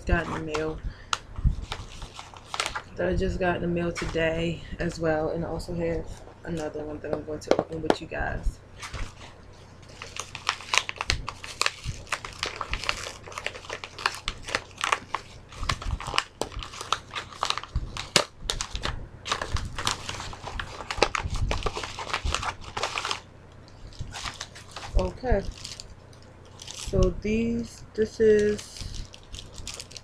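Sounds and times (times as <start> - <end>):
packaging crinkling: 0.3 - 3.0, 8.8 - 27.0, 28.3 - 30.0.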